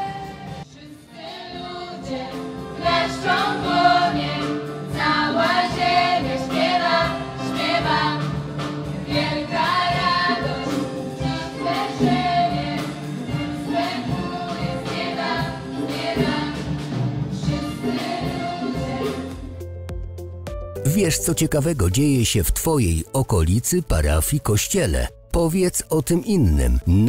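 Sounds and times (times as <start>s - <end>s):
choir singing worship song: 0.0s - 19.3s
instrumental backing: 19.9s - 27.0s.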